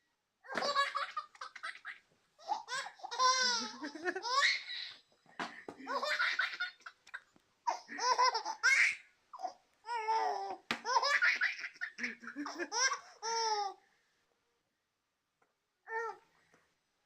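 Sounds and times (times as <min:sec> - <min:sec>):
baby laughing: 0:00.5 - 0:13.8.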